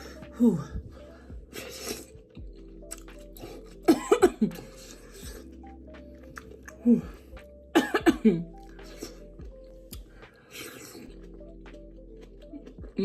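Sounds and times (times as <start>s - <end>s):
soft background music: 0.0s - 13.0s
person coughing: 3.9s - 4.7s, 7.8s - 8.4s.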